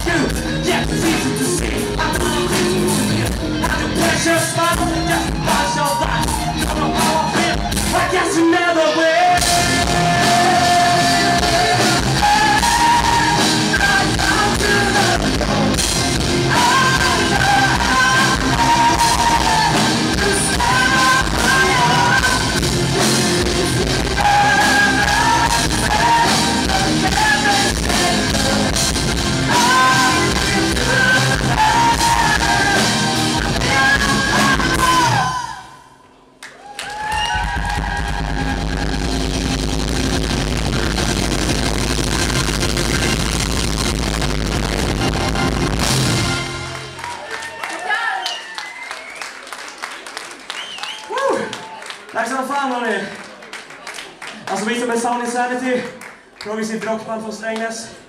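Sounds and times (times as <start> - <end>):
rock band playing live: 0.0 - 35.6, 37.4 - 47.2
person singing: 0.0 - 36.0.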